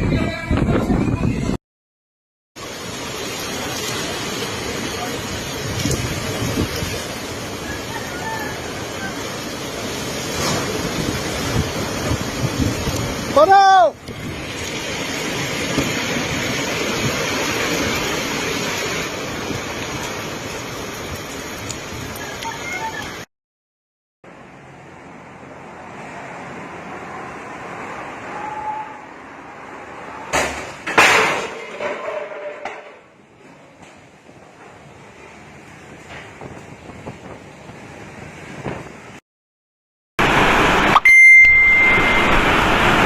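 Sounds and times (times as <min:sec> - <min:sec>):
strong wind rushing: 0:00.0 - 0:01.6, 0:10.6 - 0:14.7
wind and rain rushing: 0:00.0 - 0:01.6, 0:02.6 - 0:23.3, 0:33.1 - 0:39.2, 0:40.2 - 0:43.0
wind buffeting microphone: 0:00.0 - 0:01.6, 0:05.5 - 0:07.5, 0:10.6 - 0:13.4, 0:35.3 - 0:39.2.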